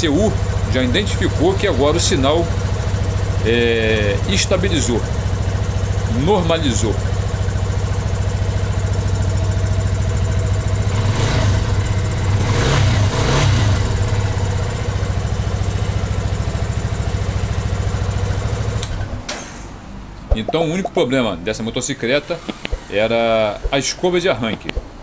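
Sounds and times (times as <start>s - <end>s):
motorcycle engine idling: 0.0s - 10.8s
throttle blips: 20.3s - 21.0s, 22.5s - 22.8s, 24.5s - 24.9s.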